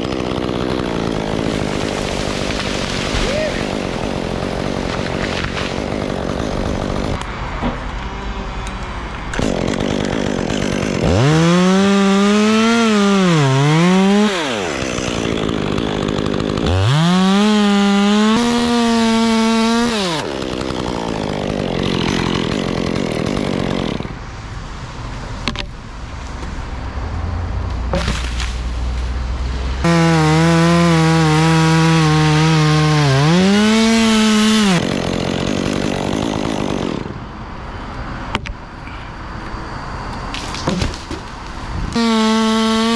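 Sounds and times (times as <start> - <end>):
chainsaw cutting wood: 0.0 - 24.2, 29.8 - 37.2, 41.9 - 42.9.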